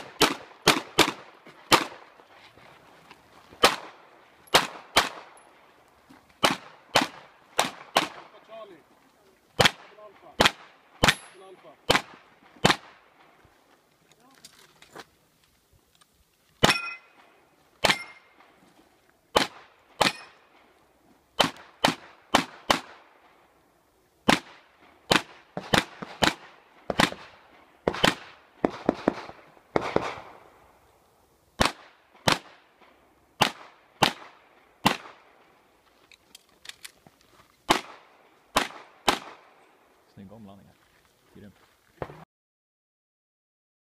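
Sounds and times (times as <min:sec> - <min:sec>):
handgun shots: 0:04.5 - 0:05.3, 0:10.4 - 0:12.9, 0:17.8 - 0:18.3, 0:19.3 - 0:20.4.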